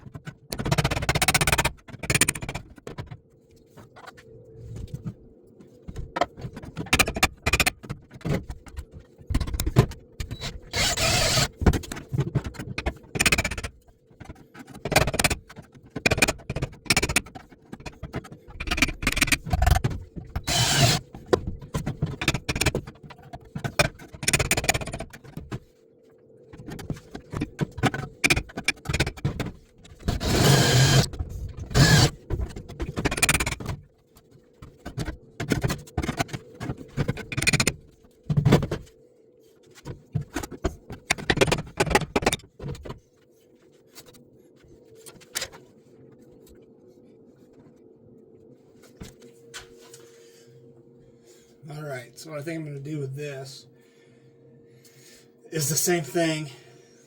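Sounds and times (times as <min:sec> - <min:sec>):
faint steady hum: 0:00.0 - 0:57.0
metal cutting and scraping: 0:10.2 - 0:11.6, 0:20.4 - 0:21.1, 0:30.0 - 0:32.2.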